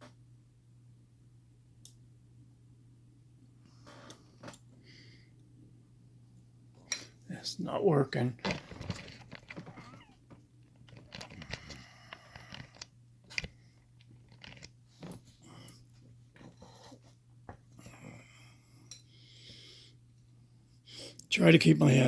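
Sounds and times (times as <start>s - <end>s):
lock pick clicks and scrapes: 10.7s - 14.7s.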